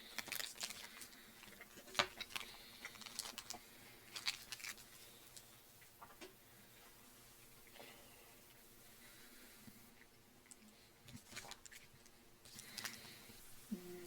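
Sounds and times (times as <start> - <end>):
chocolate wrapper clicks and taps: 0.2 - 3.6.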